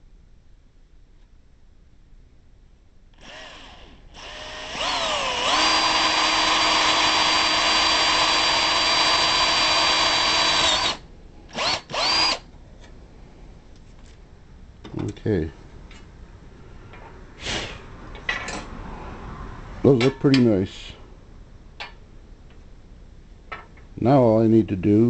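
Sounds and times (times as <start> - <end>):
cordless drill boring through metal: 3.2 - 12.4.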